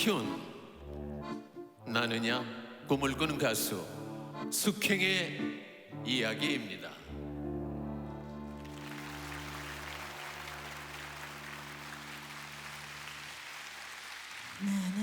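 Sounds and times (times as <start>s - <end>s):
audience applauding: 8.5s - 15.0s.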